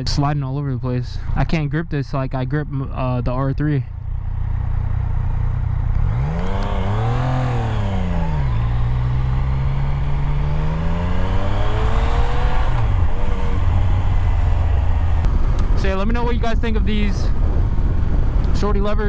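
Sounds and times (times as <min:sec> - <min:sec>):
motorcycle engine revving: 0:03.9 - 0:18.5
wind noise: 0:06.0 - 0:19.0.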